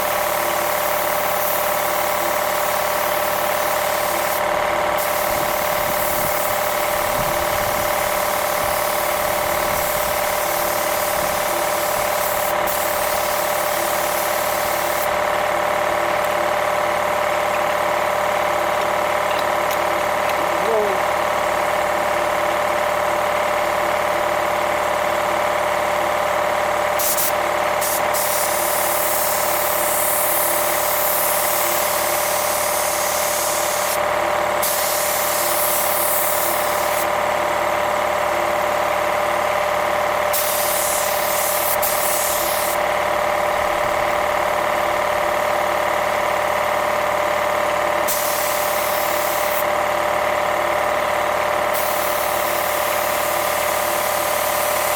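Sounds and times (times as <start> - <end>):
spray gun hissing: 0.0 - 4.4, 5.0 - 15.1, 27.0 - 34.0, 34.6 - 37.1, 40.3 - 44.2, 48.0 - 49.7, 51.7 - 54.9
air compressor running: 0.0 - 54.9.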